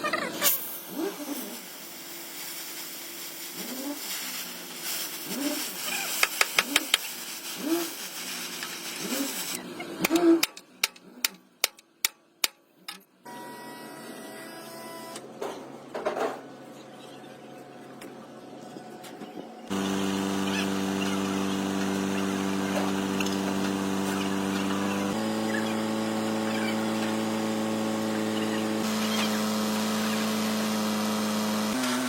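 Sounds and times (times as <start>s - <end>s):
engine-like drone: 17.4s - 32.0s.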